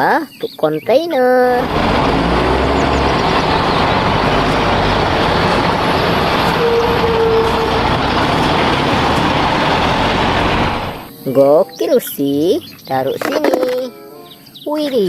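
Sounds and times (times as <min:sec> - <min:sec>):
truck engine rumbling: 0:01.4 - 0:11.1.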